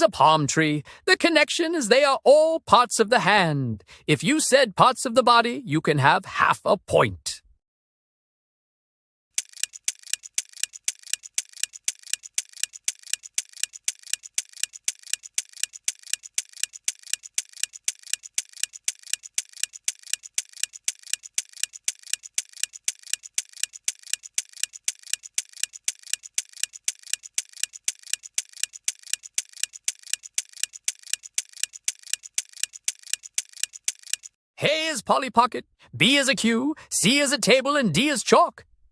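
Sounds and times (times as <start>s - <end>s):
clock ticking: 9.4s - 34.3s.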